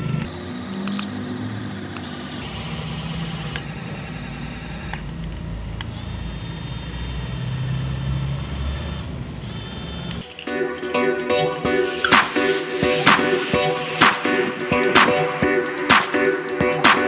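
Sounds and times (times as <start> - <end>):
small geared motors running: 0.3 - 5.0
music: 10.2 - 17.0.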